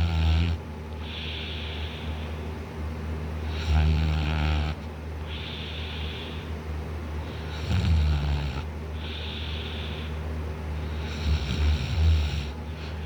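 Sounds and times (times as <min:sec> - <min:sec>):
man snoring: 0:00.0 - 0:00.6, 0:03.4 - 0:04.8, 0:07.3 - 0:08.7, 0:10.9 - 0:12.6.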